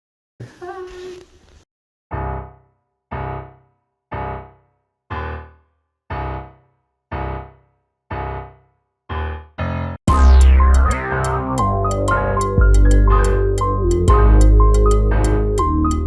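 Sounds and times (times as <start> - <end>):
keyboard chords: 9.1 - 16.0.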